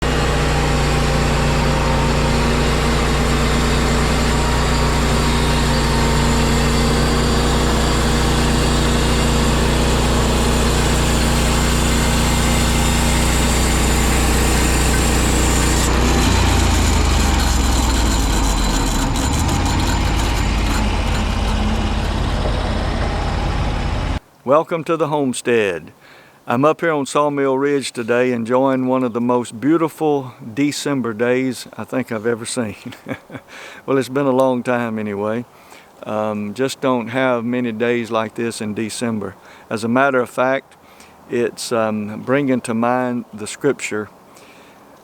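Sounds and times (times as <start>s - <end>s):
large engine running: 0.0s - 24.2s.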